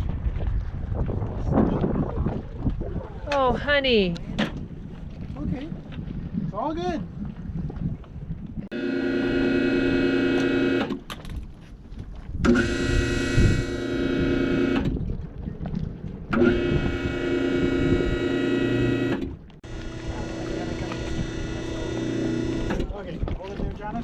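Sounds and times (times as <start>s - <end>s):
electric winch motor whine: 8.7s - 11.0s, 12.4s - 14.9s, 16.3s - 22.9s.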